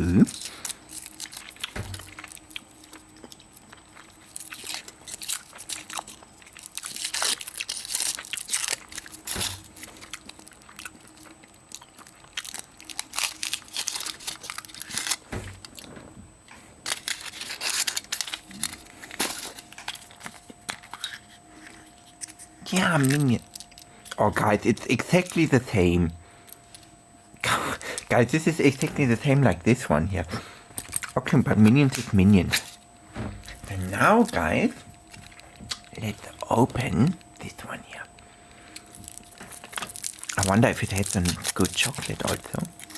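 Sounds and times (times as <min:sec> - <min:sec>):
chocolate shell crunching: 0:00.0 - 0:15.9, 0:16.8 - 0:42.9
foil wrapper crinkling and tearing: 0:00.0 - 0:15.9, 0:16.8 - 0:25.6, 0:38.7 - 0:42.9
handling noises: 0:30.4 - 0:37.4.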